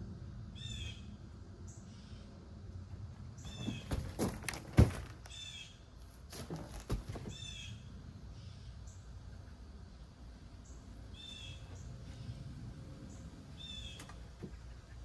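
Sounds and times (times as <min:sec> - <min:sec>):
knocks and clatter of pole frame: 0:03.5 - 0:05.3, 0:06.3 - 0:07.4.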